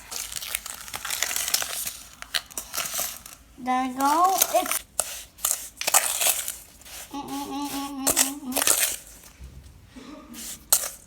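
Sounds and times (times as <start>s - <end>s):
sand crunching in a bowl: 0.0s - 9.3s, 10.4s - 11.0s
person humming: 7.1s - 8.8s.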